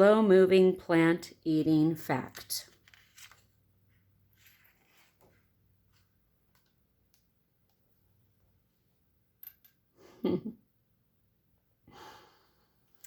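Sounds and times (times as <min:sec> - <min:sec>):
faint clicks and taps: 0:05.2 - 0:07.8.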